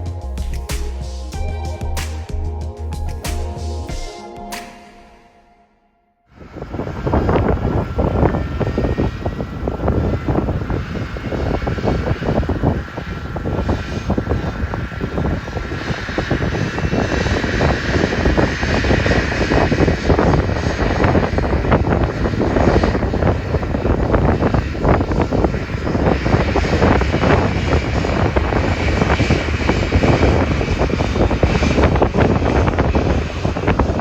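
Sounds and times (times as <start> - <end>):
jet engines running: 0.0 - 5.5, 6.3 - 34.0.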